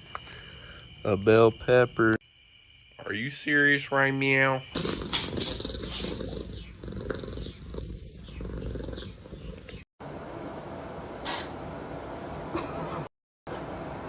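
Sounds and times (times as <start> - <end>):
cat purring: 4.8 - 9.9
short hiss: 11.2 - 11.6.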